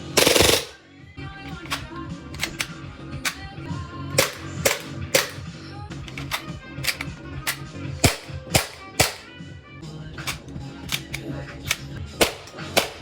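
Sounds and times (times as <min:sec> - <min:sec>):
airsoft handgun shots: 0:00.0 - 0:00.8, 0:04.2 - 0:05.4, 0:08.0 - 0:09.3, 0:12.2 - 0:13.0
background music: 0:00.0 - 0:13.0.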